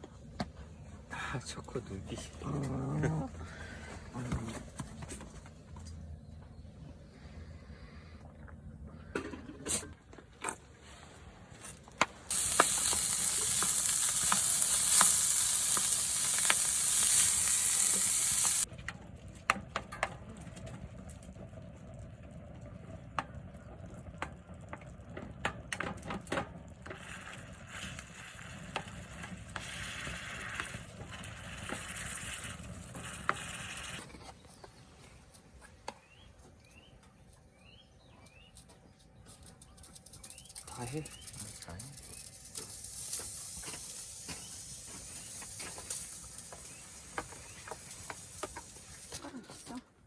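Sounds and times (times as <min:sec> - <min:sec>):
food sizzling in a pan: 0:12.3 - 0:18.7, 0:42.2 - 0:49.3.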